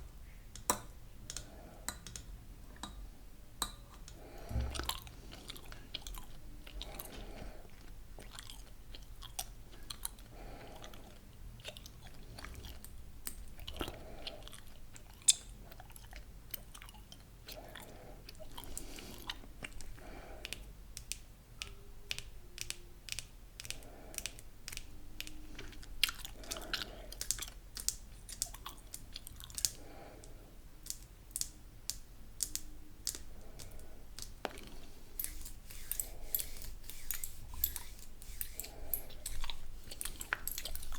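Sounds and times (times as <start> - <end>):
gum chewing mouth clicks: 4.0 - 31.6, 38.5 - 40.9.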